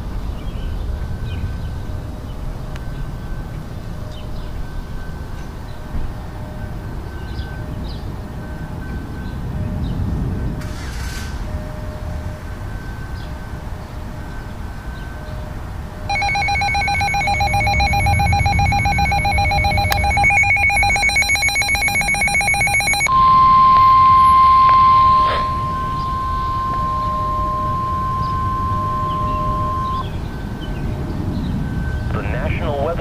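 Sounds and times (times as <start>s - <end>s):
rapidly pulsing alarm: 0.6s - 33.0s
steady single-pitch alert tone: 16.1s - 30.4s.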